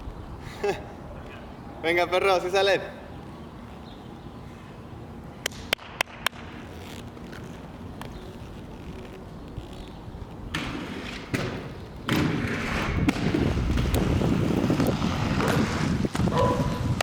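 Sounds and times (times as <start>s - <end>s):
skateboard rolling on pavement: 3.1s - 17.0s
skateboard thuds and clacks: 10.5s - 17.0s.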